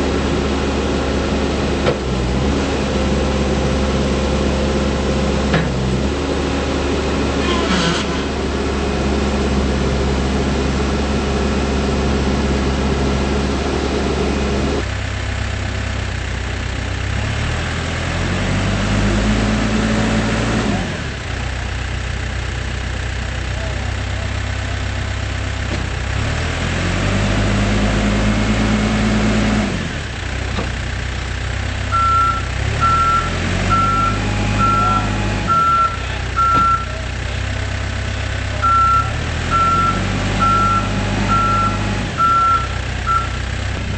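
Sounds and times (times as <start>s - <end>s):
diesel engine revving: 0.0s - 43.9s
reverse alarm beeping: 31.9s - 37.0s, 38.6s - 43.4s.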